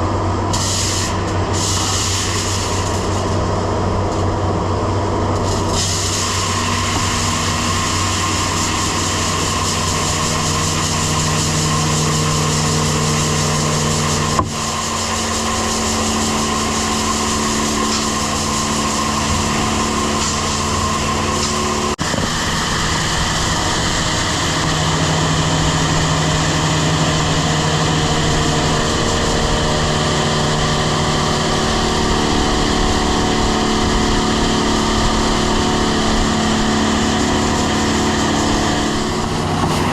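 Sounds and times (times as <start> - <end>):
engine drone: 0.0 - 39.9
grain vacuum rushing hiss: 0.5 - 3.7, 5.3 - 27.0, 39.2 - 39.9.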